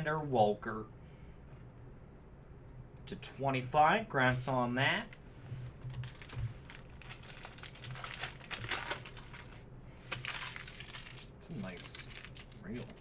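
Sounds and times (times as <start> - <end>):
plastic wrapper crinkling and tearing: 5.7 - 13.0.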